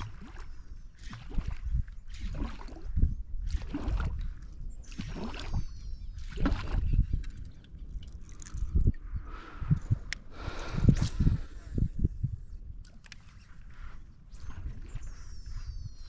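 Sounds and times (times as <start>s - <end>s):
water splashing and sloshing: 0.0s - 8.9s.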